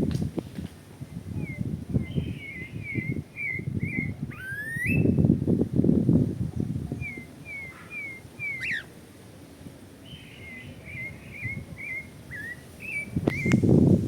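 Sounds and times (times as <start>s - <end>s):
songbird whistling: 1.4s - 5.2s, 7.0s - 8.9s, 10.1s - 13.7s.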